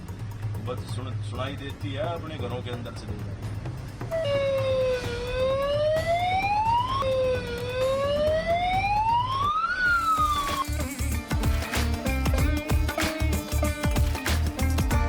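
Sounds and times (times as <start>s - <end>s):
background music with low beat: 0.0s - 15.0s
air raid siren wailing: 4.1s - 10.6s.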